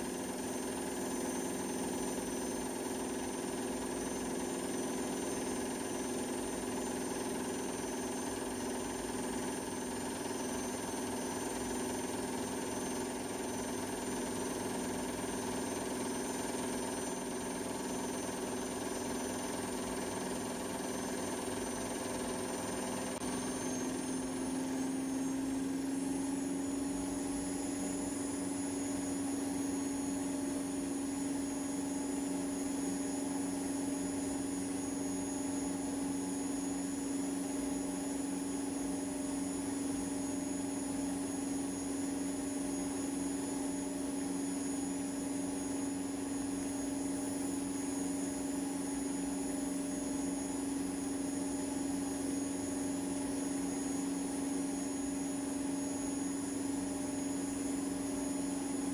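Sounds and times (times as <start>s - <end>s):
washing machine spinning: 0.0s - 58.9s.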